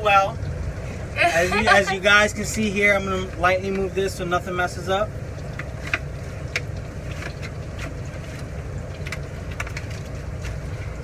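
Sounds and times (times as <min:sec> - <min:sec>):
oil bubbling and sizzling: 0:00.0 - 0:11.0
sharp pops and crackles: 0:05.3 - 0:10.8.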